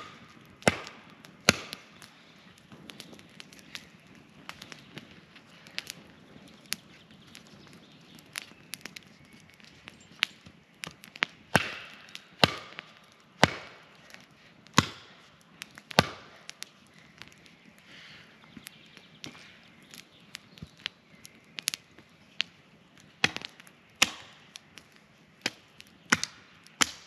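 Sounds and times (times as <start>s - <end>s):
wood being chopped: 0.0s - 1.9s, 11.2s - 15.1s, 15.7s - 16.6s, 23.2s - 24.4s, 25.4s - 27.0s.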